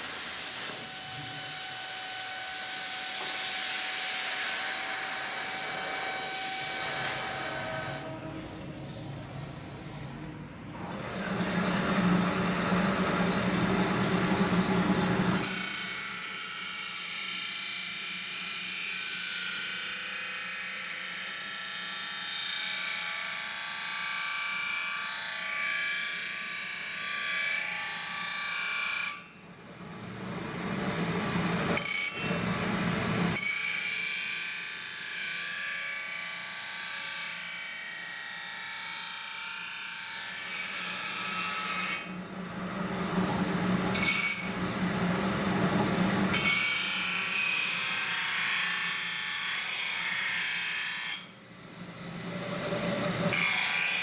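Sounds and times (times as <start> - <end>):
power tool grinding knife blades: 10.8 - 18.8, 31.0 - 36.5, 43.2 - 54.0.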